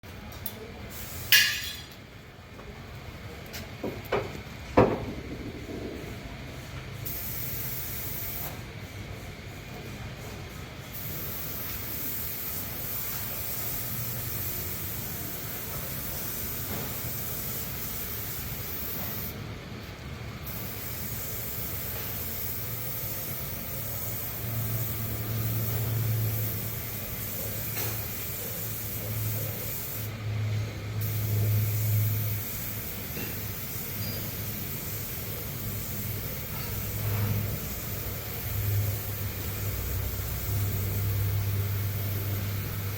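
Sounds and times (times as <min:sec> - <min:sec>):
compressed air spraying: 0:00.9 - 0:01.9, 0:07.0 - 0:08.7, 0:10.9 - 0:19.4, 0:20.4 - 0:30.2, 0:31.0 - 0:42.9
sharp knocks: 0:03.8 - 0:05.6
low hum: 0:05.0 - 0:06.9.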